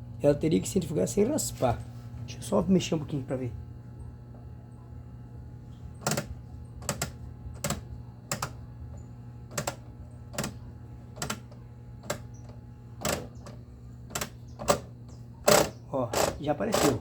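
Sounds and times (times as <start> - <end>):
low motor hum: 0.0 - 17.0
washing machine clicking and scraping: 5.8 - 17.0.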